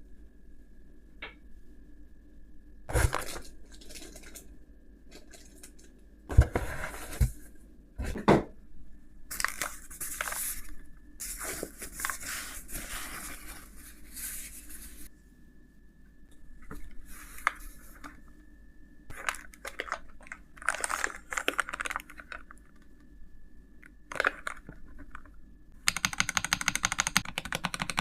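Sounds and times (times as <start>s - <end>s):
plastic wrapping crinkling and tearing: 9.3s - 10.6s, 19.1s - 22.8s, 24.1s - 25.1s.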